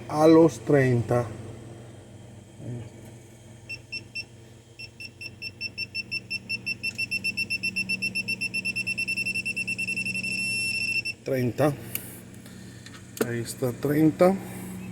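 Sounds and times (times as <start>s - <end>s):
torque wrench beeping: 3.7s - 11.2s.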